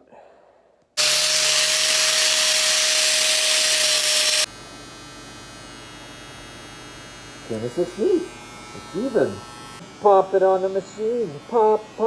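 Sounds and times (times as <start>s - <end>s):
power tool grinding steel: 1.0s - 4.5s, 7.3s - 12.0s
electric motor hum with buzz: 1.0s - 12.0s.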